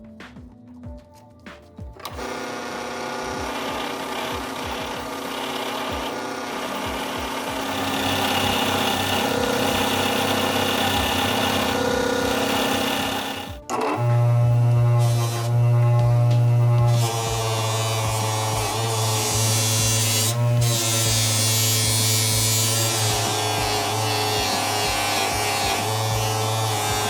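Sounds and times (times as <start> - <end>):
power tool motor hum: 2.0 - 27.0
grinding rub on metal blade: 16.9 - 27.0.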